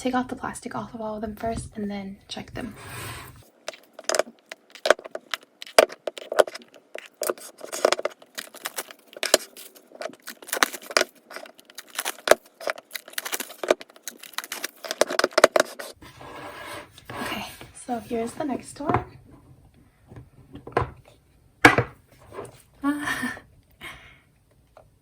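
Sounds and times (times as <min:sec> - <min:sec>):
plastic shrink wrap tearing: 0:03.8 - 0:15.9.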